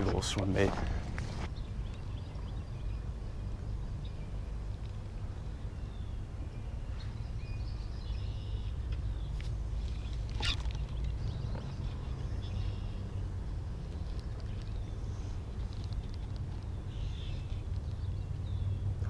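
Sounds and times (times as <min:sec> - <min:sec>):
bird chirps: 0:05.6 - 0:13.2.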